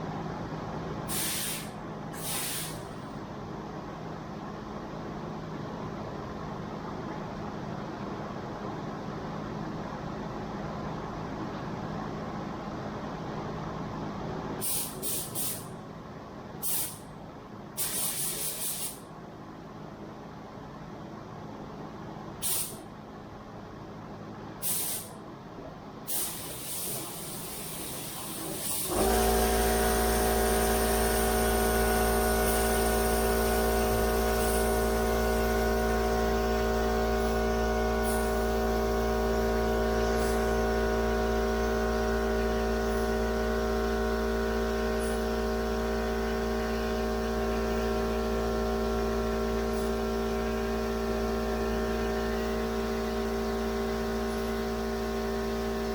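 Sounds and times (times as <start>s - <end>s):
air compressor running: 1.0s - 3.2s, 14.6s - 15.8s, 16.6s - 17.1s, 17.8s - 19.1s, 22.4s - 22.9s, 24.6s - 25.2s, 26.1s - 55.9s
spray gun air hisses: 1.1s - 2.9s, 14.6s - 15.7s, 16.6s - 17.0s, 17.8s - 19.0s, 22.4s - 22.8s, 24.6s - 25.1s, 26.1s - 35.0s.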